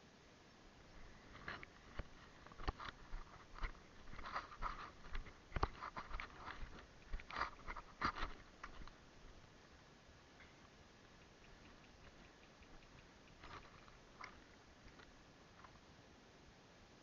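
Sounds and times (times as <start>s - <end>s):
sharp clicks: 11.1s - 15.1s.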